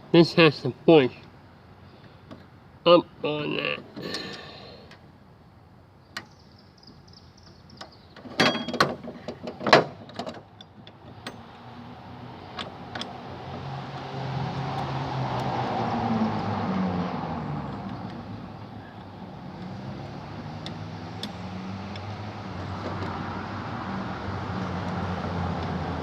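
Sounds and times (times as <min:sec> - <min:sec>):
metal lock parts clicking: 0:12.4 - 0:13.2.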